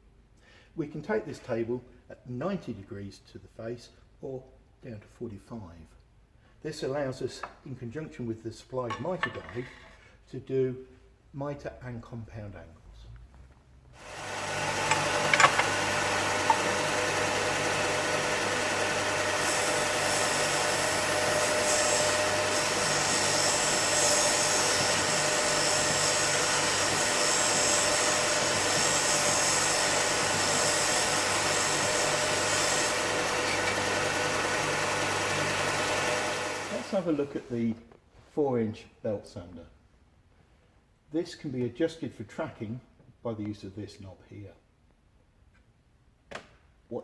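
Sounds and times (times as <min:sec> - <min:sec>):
sander motor humming: 0:14.0 - 0:37.0
wood sanding hiss: 0:14.0 - 0:37.2.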